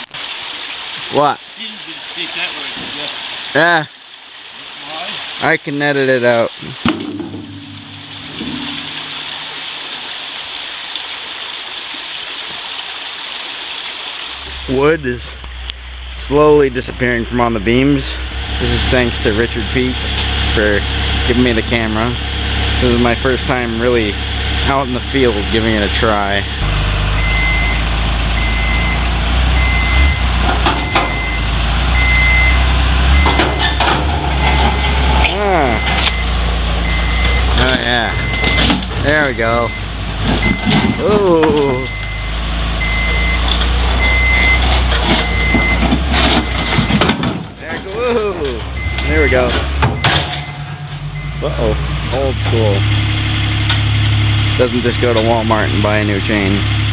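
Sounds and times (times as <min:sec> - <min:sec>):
sharp knocks: 0:06.8 - 0:10.1
low engine hum: 0:06.8 - 0:10.4, 0:14.3 - 0:56.9
river water rushing: 0:06.9 - 0:21.3
reversing alarm beeping: 0:07.4 - 0:09.9, 0:26.6 - 0:33.4, 0:35.4 - 0:47.1, 0:48.1 - 0:56.9.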